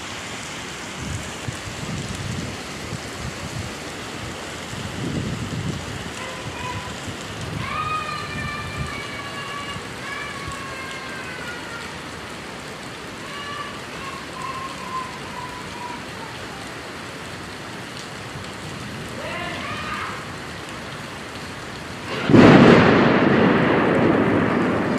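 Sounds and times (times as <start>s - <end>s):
steady rain hiss: 0.0s - 24.9s
drawn-out high-pitched calls: 13.3s - 16.5s.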